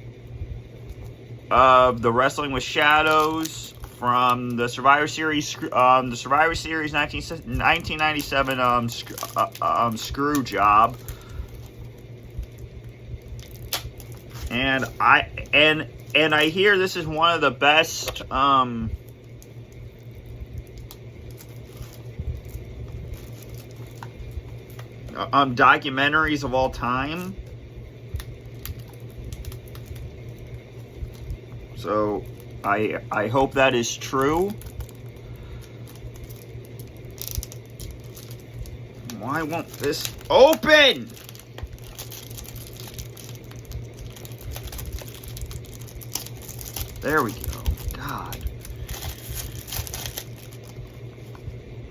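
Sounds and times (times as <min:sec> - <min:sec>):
steady low hum: 0:00.0 - 0:51.9
fingers scratching plastic wrap: 0:33.2 - 0:50.9.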